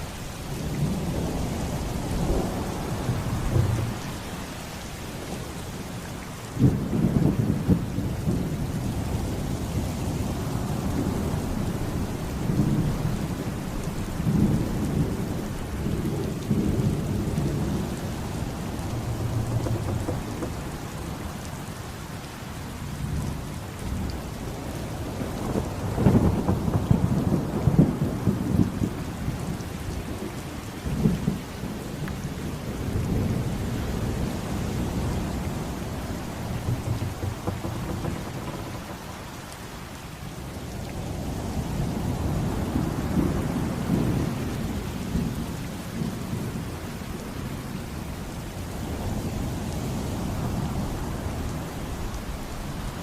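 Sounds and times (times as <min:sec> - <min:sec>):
heavy rain: 0:00.0 - 0:53.0
rolling thunder: 0:00.6 - 0:05.4, 0:11.0 - 0:21.8, 0:24.6 - 0:29.1, 0:30.9 - 0:45.4.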